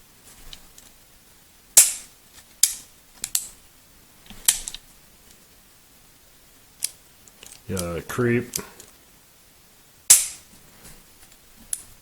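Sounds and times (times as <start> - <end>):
pistol trigger metallic clicks: 10.1 - 10.4.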